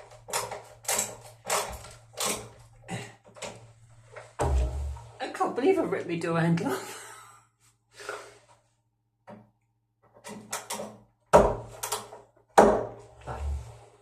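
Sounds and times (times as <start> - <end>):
heavy door thuds: 4.4 - 5.2
small clicks and rattles: 10.0 - 11.1.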